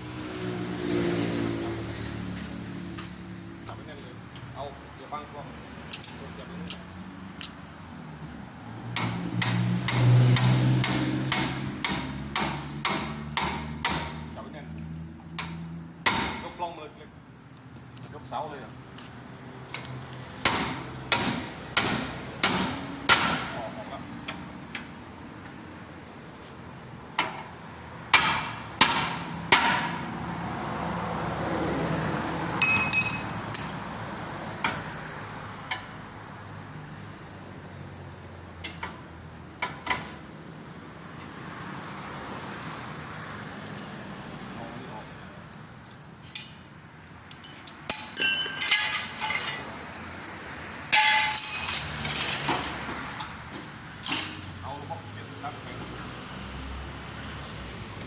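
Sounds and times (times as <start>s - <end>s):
hammer striking steel: 9.0s - 14.3s, 15.4s - 16.6s, 20.4s - 23.6s, 28.1s - 30.0s, 32.6s - 33.8s, 50.9s - 51.7s
ringing metal clink: 32.6s - 33.8s, 47.3s - 49.5s, 51.0s - 51.8s
metal tools clanking: 32.6s - 33.9s, 45.6s - 46.7s, 47.3s - 49.7s, 51.0s - 52.7s.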